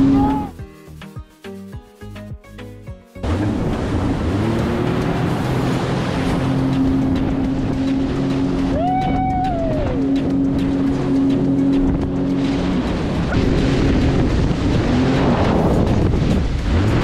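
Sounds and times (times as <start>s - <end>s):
jet ski engine running: 0.0s - 0.5s, 3.2s - 17.0s
rushing water and wind: 0.0s - 0.6s, 3.2s - 17.0s
short high call: 0.0s - 0.6s
background music: 0.0s - 17.0s.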